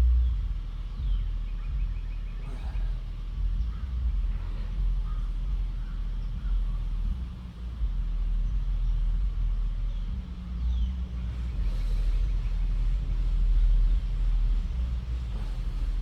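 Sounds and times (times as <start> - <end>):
low rumble: 0.0 - 16.0.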